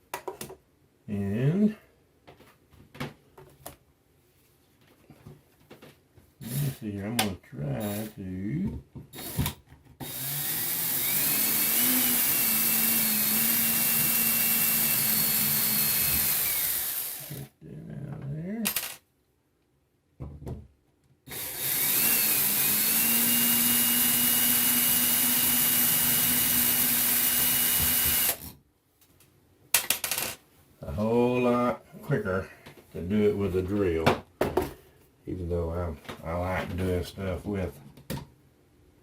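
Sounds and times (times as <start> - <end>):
power drill motor whining: 6.4 - 6.8, 7.8 - 8.2, 9.2 - 17.5, 18.7 - 19.0, 21.3 - 28.5.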